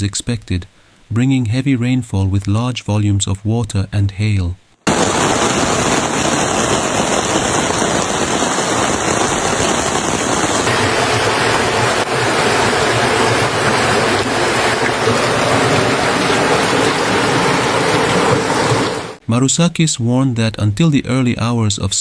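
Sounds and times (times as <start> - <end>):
loud rush of water: 4.9 - 19.2.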